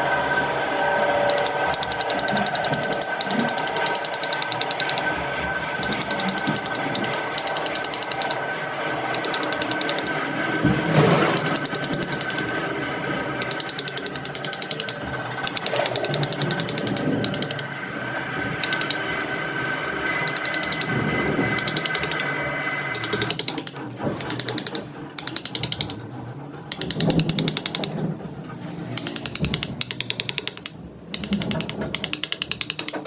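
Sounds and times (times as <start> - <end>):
lathe motor whine: 0.0 - 23.3
cutting tool chattering on wood: 0.4 - 17.7, 20.0 - 26.0, 29.0 - 33.0.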